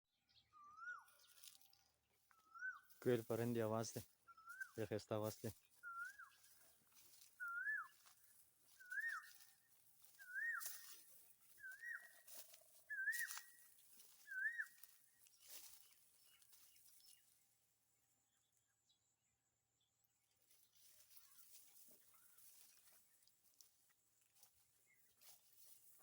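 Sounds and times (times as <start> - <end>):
bird whistled calls: 4.3 - 4.8, 5.8 - 6.4, 7.4 - 8.1, 8.8 - 9.5, 10.2 - 12.2, 12.9 - 13.6, 14.2 - 14.9.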